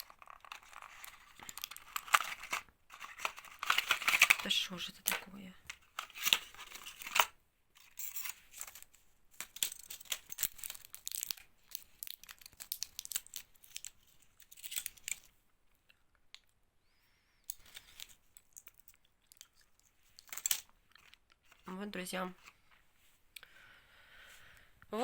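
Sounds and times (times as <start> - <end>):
packaging crinkling and tearing: 0.0 - 5.2, 5.8 - 7.3, 8.2 - 15.3.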